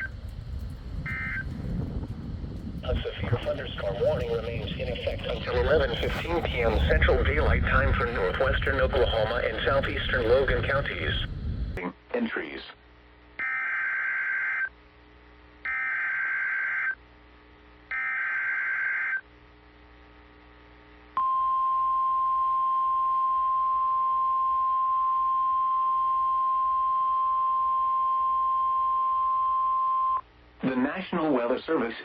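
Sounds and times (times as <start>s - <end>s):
steady warning alarm tone: 0.9s - 1.8s, 15.7s - 17.0s, 17.9s - 19.2s
digital data bursts: 1.0s - 1.6s, 2.8s - 11.3s.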